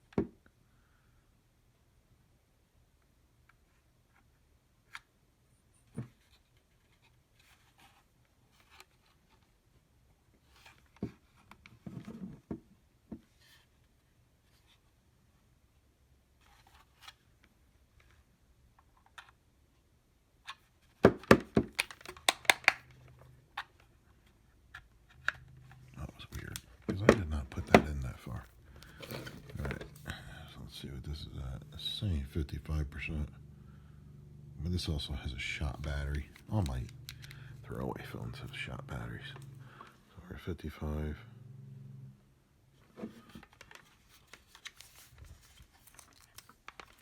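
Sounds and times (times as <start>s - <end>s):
plastic plug clicks and knocks: 21.0s - 22.9s.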